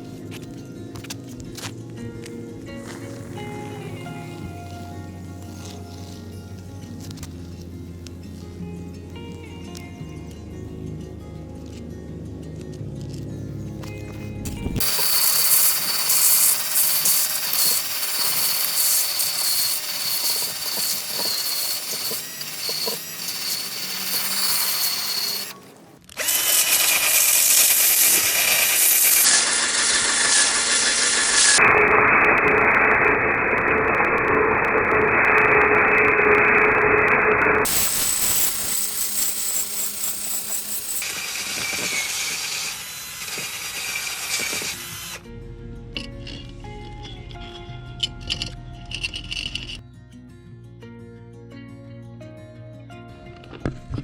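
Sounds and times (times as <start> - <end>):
power tool whining: 2.7 - 7.2, 14.5 - 45.3.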